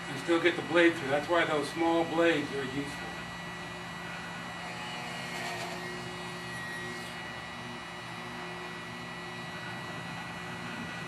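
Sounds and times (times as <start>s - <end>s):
small electric drill boring wood: 3.6s - 9.8s.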